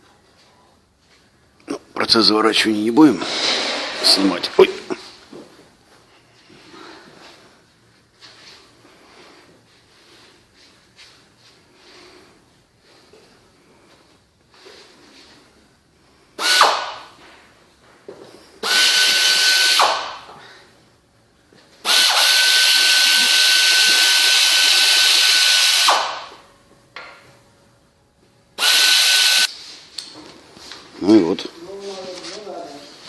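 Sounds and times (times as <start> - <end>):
power tool whining: 18.6 - 20.2, 21.9 - 26.3, 28.6 - 29.5.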